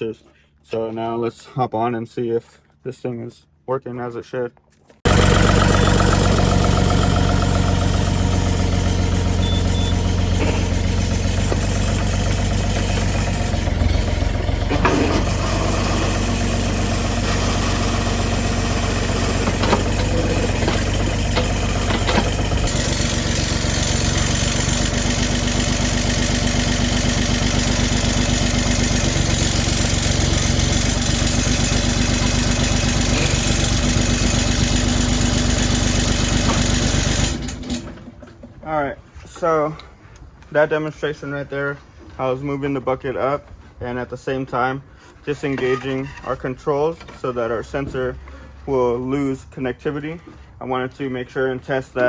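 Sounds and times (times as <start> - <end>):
diesel excavator engine running: 5.1 - 38.6
machine clunks: 19.1 - 22.8.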